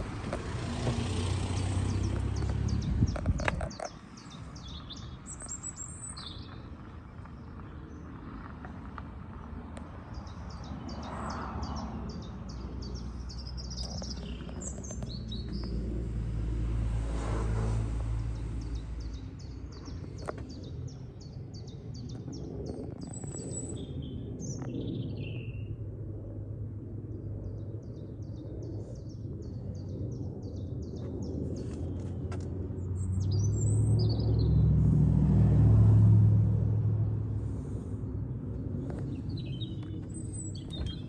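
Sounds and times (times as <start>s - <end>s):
small bird chirping: 1.5s - 6.7s, 10.2s - 15.8s
low rumble: 12.6s - 21.2s.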